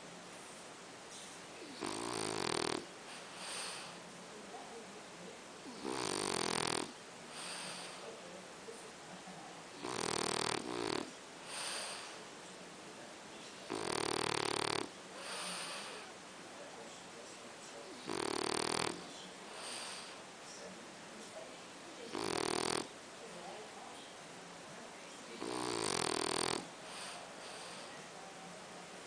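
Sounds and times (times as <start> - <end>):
pet snoring: 1.6 - 3.9, 5.6 - 8.0, 9.8 - 12.2, 13.7 - 16.1, 17.9 - 20.2, 22.0 - 23.0, 25.3 - 28.0.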